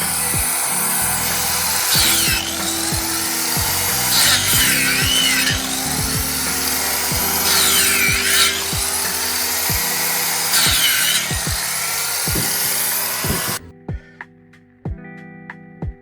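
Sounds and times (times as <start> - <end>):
background music with sustained tones: 0.0 - 16.0.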